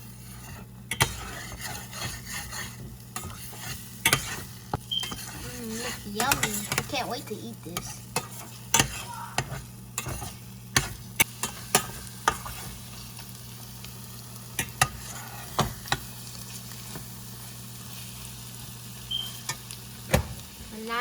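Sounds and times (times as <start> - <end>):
food sizzling in a pan: 0.0 - 21.0
utensil scraping and knocking pan: 0.2 - 7.0, 7.8 - 12.8.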